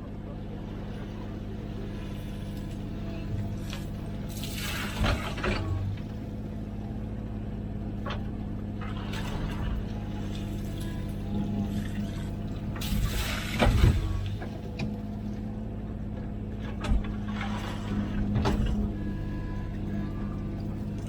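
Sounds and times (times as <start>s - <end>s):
diesel engine running: 0.0s - 21.0s
excavator digging scrape and clatter: 0.3s - 21.0s.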